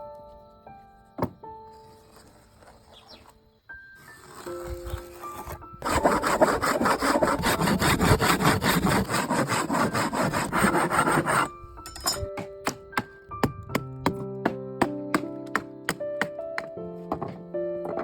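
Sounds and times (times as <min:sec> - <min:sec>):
hand saw cutting wood: 0:04.0 - 0:12.8.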